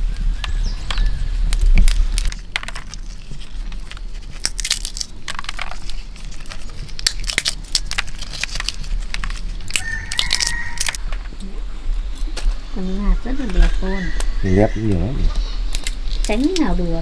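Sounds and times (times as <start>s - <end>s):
low rumble: 0.0s - 17.0s
dry plants crunching and snapping: 0.4s - 11.3s, 15.7s - 16.7s.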